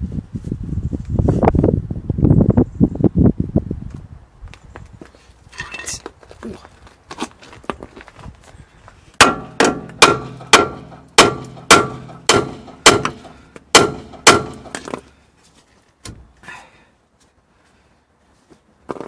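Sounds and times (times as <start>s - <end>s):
hammer striking metal: 9.2s - 15.0s.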